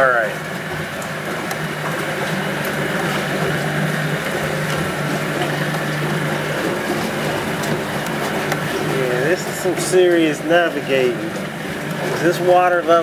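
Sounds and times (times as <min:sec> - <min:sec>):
boat motor running: 0:00.0 - 0:13.0.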